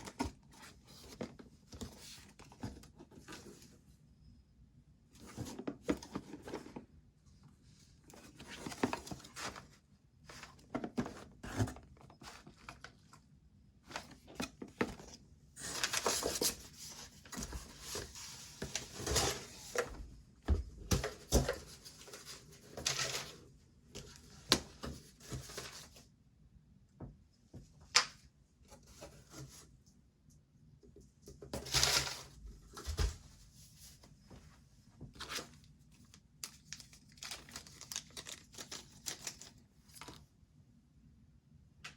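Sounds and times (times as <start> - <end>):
cardboard and wrapping rustling: 8.1 - 13.2, 13.8 - 23.4, 24.0 - 26.0, 31.5 - 34.4, 36.4 - 40.2.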